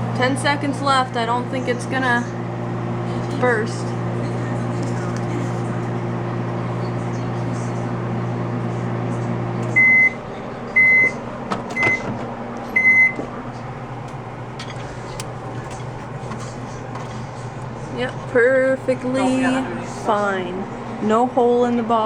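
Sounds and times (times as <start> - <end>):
microwave oven humming: 0.0 - 22.0
microwave beeps: 9.5 - 16.0.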